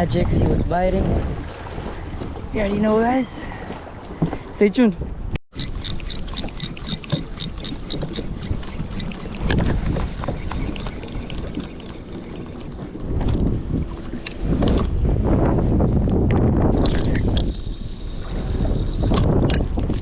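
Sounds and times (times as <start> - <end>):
water rushing around kayak: 0.0 - 20.0
wind buffeting microphone: 0.0 - 20.0
quick even ticking: 5.6 - 9.3.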